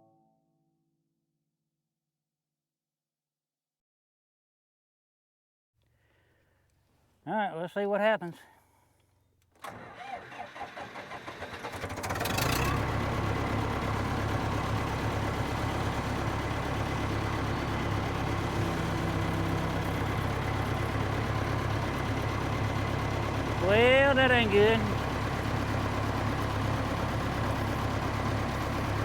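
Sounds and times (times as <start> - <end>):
engine cranking and starting: 9.5 - 15.2.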